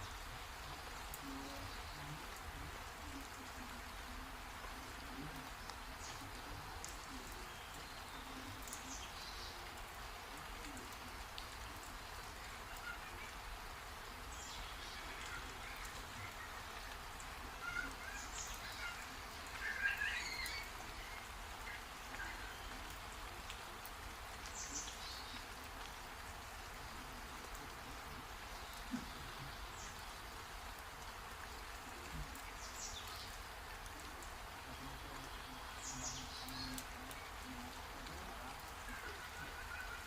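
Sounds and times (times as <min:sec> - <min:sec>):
steady rain falling: 0:00.0 - 0:40.0
birds chirping and calling: 0:17.6 - 0:22.7, 0:38.9 - 0:40.0.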